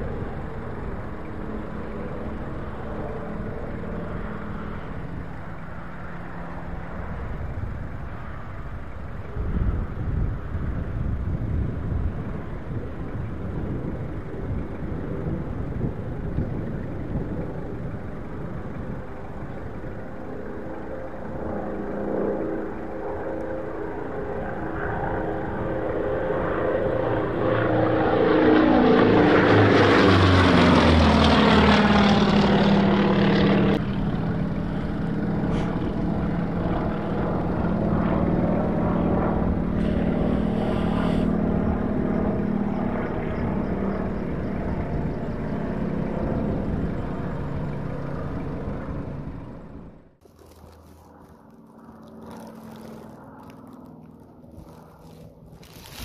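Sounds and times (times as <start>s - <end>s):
propeller airplane passing overhead: 0.0s - 56.0s
wind noise on microphone: 7.1s - 22.6s, 31.9s - 56.0s.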